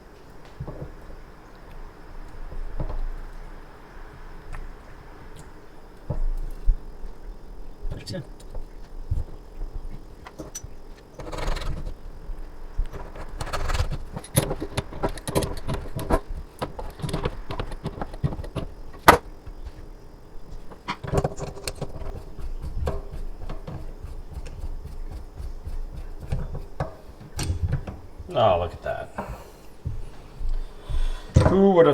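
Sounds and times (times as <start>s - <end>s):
metal parts and tools clinking: 26.8s - 28.7s.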